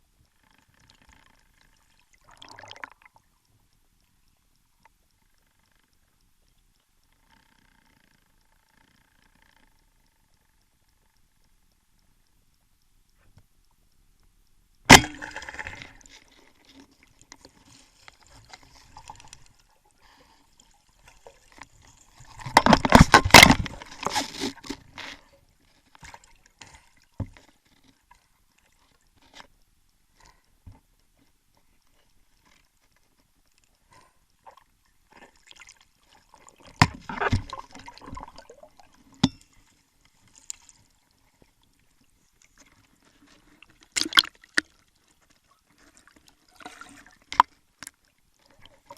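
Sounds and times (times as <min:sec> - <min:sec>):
underwater rushing water and bubbles: 0:01.8 - 0:03.3, 0:14.9 - 0:25.3, 0:34.4 - 0:44.6
sharp underwater knocks: 0:14.9 - 0:16.0.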